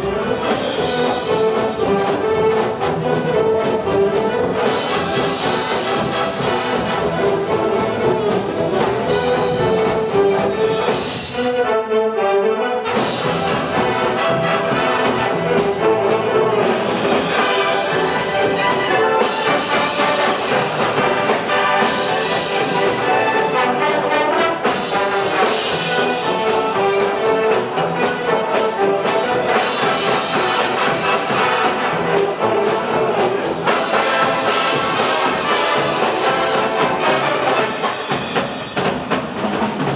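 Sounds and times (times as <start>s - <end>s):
brass band playing: 0.0s - 39.9s.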